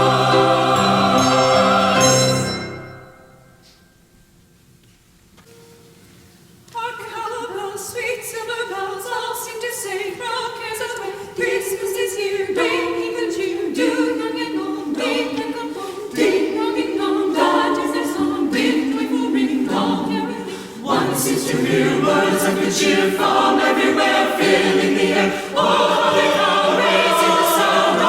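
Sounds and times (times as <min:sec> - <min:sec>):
choir singing a carol: 0:00.0 - 0:03.5, 0:06.8 - 0:28.0.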